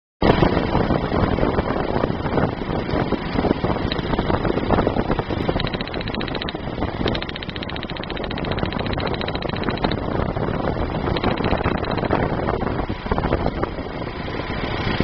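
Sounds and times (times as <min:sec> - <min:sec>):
car engine misfiring: 0:03.0 - 0:15.0
fast regular ticking: 0:03.8 - 0:12.6.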